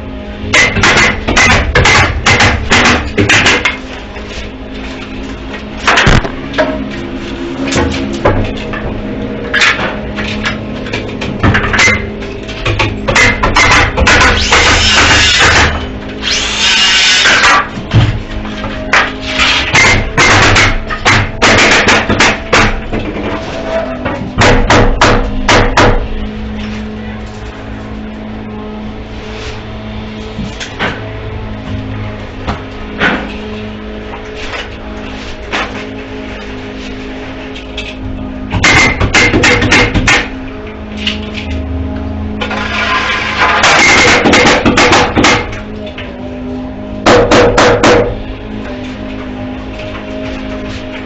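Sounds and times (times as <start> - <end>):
steady hum: 0.0 - 51.0
hammer driving nails: 0.5 - 3.8, 12.6 - 18.1, 18.9 - 22.8, 24.4 - 26.0, 38.5 - 40.3, 43.4 - 45.6, 47.0 - 48.1.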